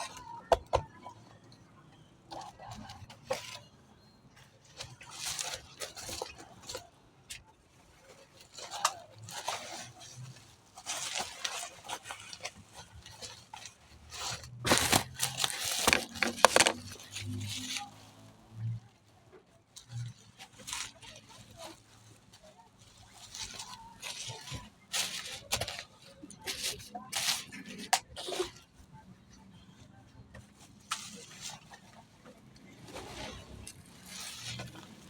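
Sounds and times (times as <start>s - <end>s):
packaging rustling: 10.8s - 18.4s.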